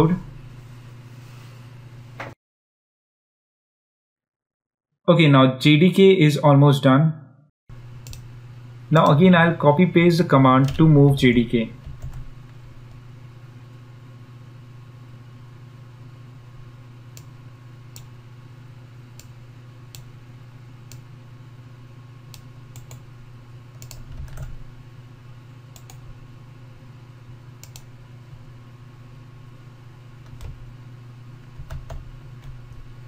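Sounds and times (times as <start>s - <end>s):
steady low hum: 0.0s - 2.4s, 7.7s - 33.0s
computer keyboard clicks: 8.0s - 8.3s, 22.7s - 23.0s, 23.8s - 24.6s, 25.7s - 26.0s.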